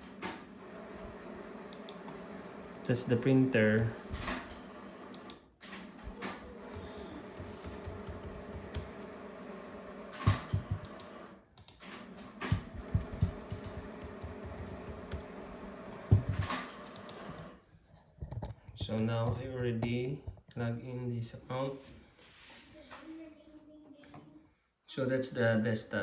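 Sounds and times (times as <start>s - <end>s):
typing on laptop keyboard: 6.2s - 9.2s, 10.3s - 11.8s, 12.5s - 15.4s.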